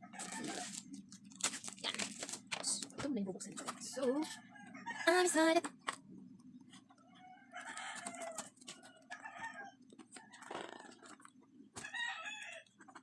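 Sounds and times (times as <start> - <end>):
packaging tape crackling: 0.2 - 3.0
chickens clucking: 6.7 - 13.0.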